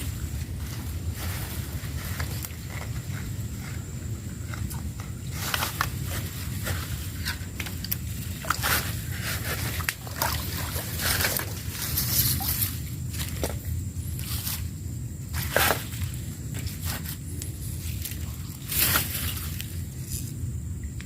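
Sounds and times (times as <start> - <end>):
grass rustling: 0.0 - 20.4
water splashing: 7.6 - 13.6.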